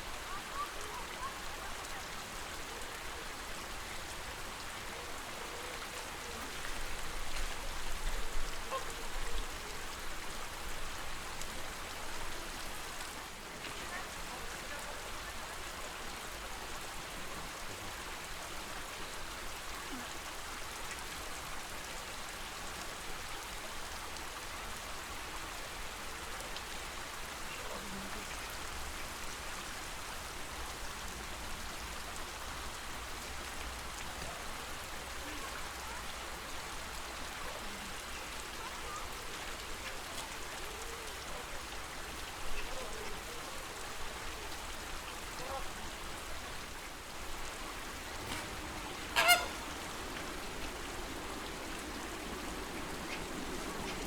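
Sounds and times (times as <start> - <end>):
water wash: 30.5 - 54.0
faint short sounds: 47.6 - 51.6.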